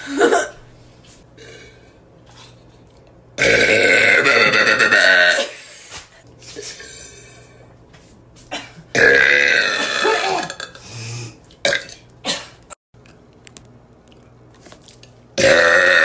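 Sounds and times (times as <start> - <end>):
woman burping loudly: 3.4 - 5.6, 8.9 - 10.8, 11.6 - 12.0, 15.4 - 16.0.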